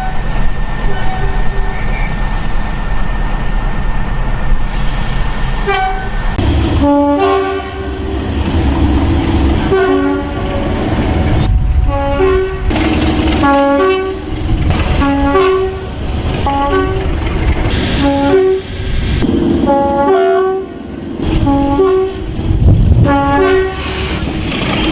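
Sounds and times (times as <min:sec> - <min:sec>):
two-tone train horn: 0:00.0 - 0:00.3, 0:05.6 - 0:18.7, 0:19.6 - 0:22.4, 0:23.0 - 0:24.2
train rumbling: 0:00.0 - 0:24.9.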